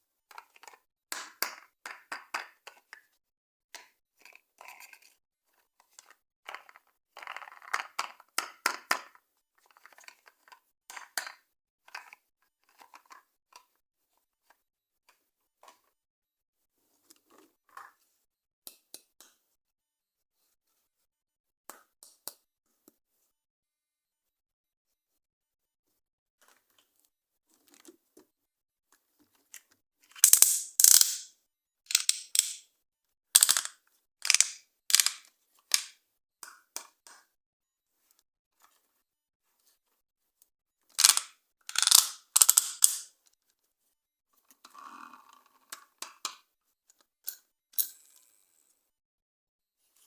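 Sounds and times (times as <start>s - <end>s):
plastic toys clicking and clattering: 5.9s - 13.7s, 29.5s - 31.3s, 31.9s - 32.6s, 33.4s - 36.0s, 40.9s - 43.2s.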